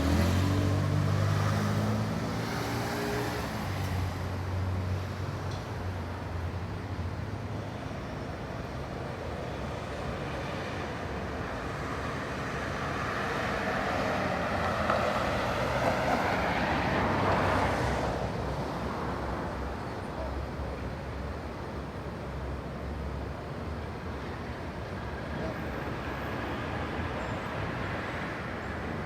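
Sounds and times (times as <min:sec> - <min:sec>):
vehicle passing: 0:00.0 - 0:04.8.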